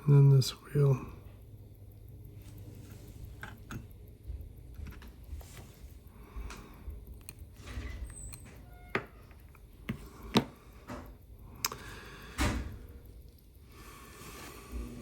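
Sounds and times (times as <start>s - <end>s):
metal tools clicking on watch: 6.6s - 11.8s.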